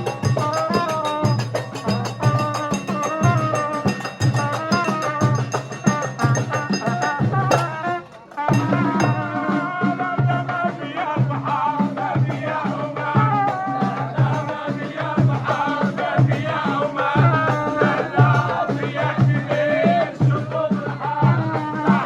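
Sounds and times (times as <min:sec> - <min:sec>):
rattling percussion: 0:00.0 - 0:09.9
drums beating steady rhythm: 0:00.0 - 0:22.0.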